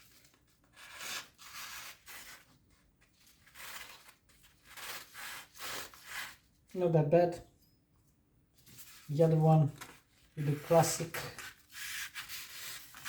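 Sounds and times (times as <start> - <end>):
blade slicing paper: 0.1 - 2.5, 3.2 - 6.4, 10.4 - 13.0.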